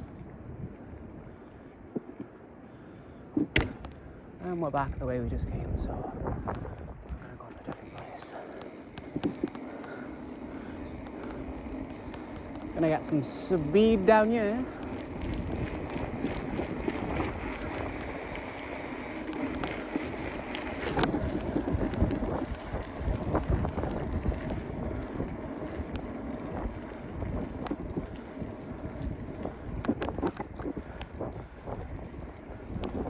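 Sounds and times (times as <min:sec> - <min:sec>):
wind buffeting microphone: 0:00.0 - 0:33.0.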